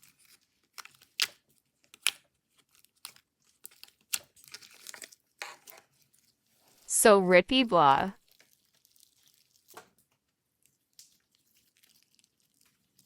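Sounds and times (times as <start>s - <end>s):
slime popping and crackling: 8.3s - 13.0s.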